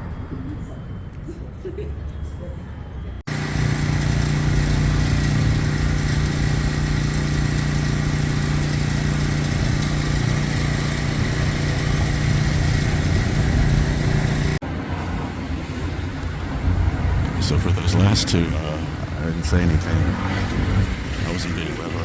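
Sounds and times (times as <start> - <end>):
mechanical drone with low hum: 3.1 - 22.0.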